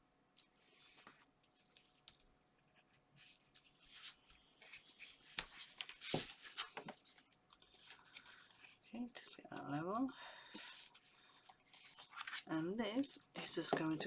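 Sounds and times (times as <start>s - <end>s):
paper rustling and sliding: 3.2s - 8.8s, 10.6s - 12.5s.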